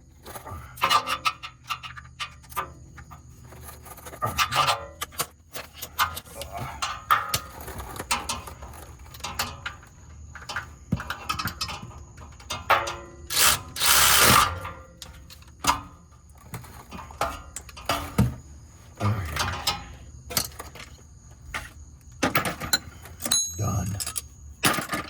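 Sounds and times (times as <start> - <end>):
ratchet wrench clicking: 13.3 - 14.5
metal tools clattering: 19.2 - 21.0, 22.3 - 25.0.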